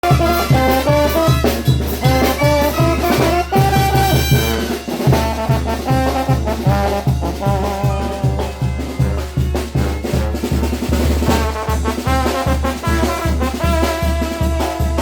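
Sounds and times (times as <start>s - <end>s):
trumpets and trombones melody: 0.0s - 15.0s
low bass beat: 5.4s - 11.5s.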